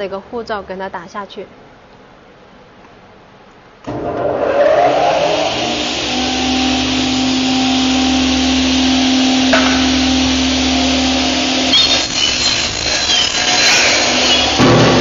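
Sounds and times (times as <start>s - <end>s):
miter saw running: 3.9s - 15.0s.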